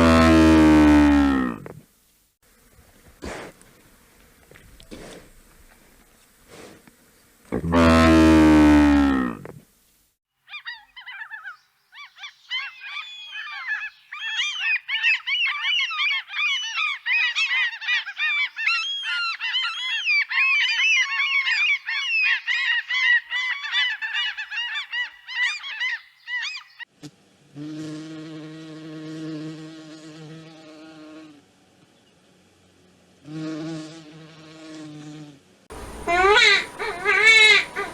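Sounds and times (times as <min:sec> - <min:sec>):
loud animal call falling in pitch: 0:00.0 - 0:01.8, 0:35.7 - 0:37.9
steady buzzing drone: 0:00.0 - 0:01.8, 0:28.6 - 0:37.9
geese honking: 0:35.7 - 0:37.9.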